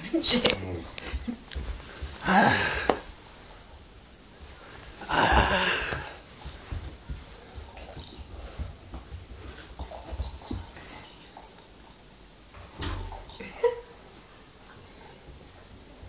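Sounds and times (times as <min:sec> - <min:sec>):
puppy bumps and scuffles: 0:04.4 - 0:11.5.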